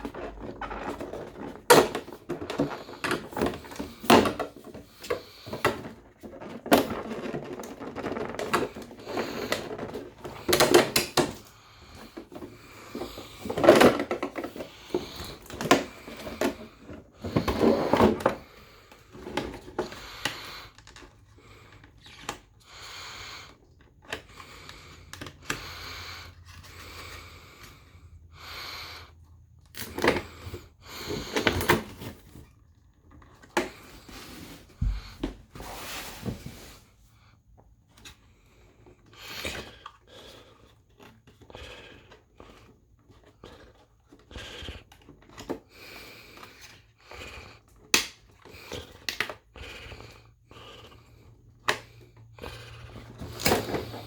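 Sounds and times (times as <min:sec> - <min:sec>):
cardboard and plastic packaging rustling: 0:00.0 - 0:22.6, 0:29.7 - 0:41.4, 0:51.3 - 0:54.0.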